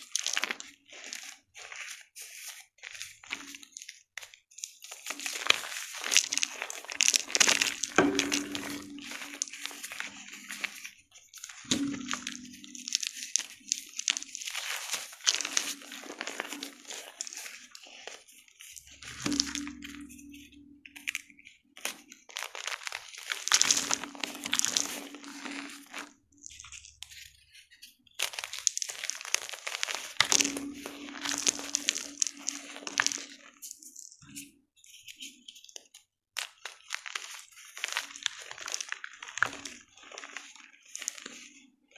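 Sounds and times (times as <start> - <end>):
chalk crushing and crunching: 0.0 - 41.9.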